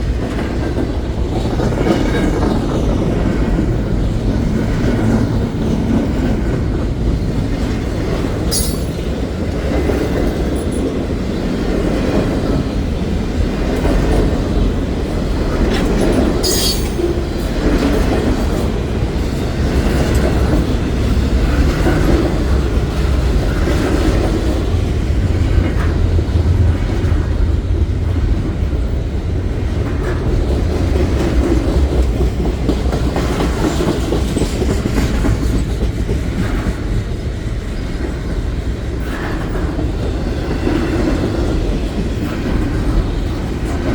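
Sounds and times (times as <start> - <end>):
wheels clacking over rail joints: 0.0 - 26.6, 29.7 - 38.0
freight train cars rolling: 0.0 - 43.9.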